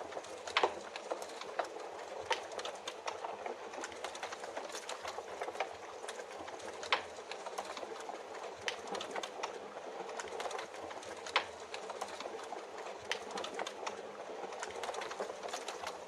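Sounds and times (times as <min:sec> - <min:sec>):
steady rain hiss: 0:00.0 - 0:16.0
wood fire crackling: 0:00.0 - 0:16.0.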